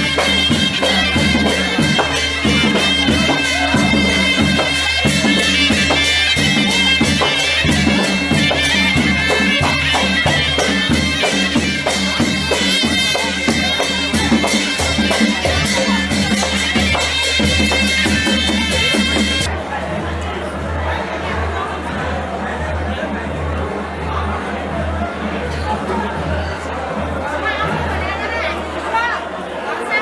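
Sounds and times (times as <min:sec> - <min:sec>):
drum beating: 0:00.0 - 0:19.5
reed wind instrument melody: 0:00.0 - 0:19.5.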